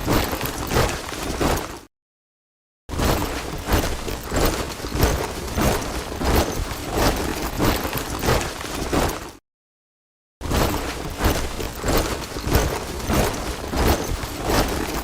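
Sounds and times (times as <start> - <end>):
soldiers marching in step: 3.2 - 9.4, 10.6 - 15.0.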